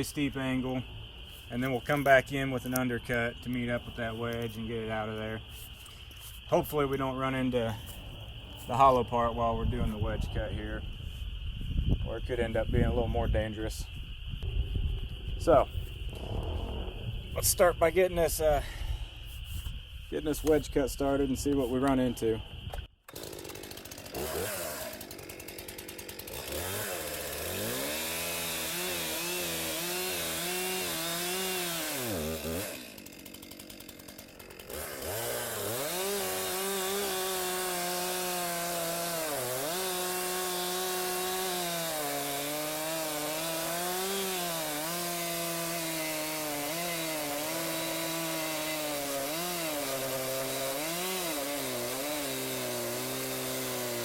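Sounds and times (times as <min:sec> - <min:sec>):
chainsaw cutting wood: 0:23.0 - 0:54.0.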